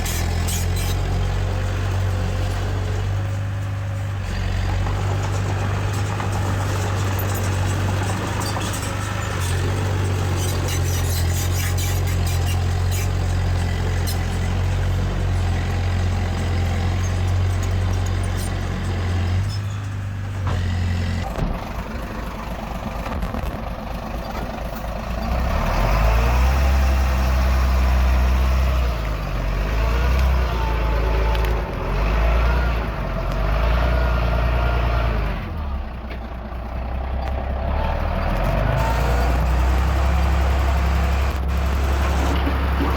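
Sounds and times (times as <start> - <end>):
heavy machinery diesel engine: 0.0 - 42.9.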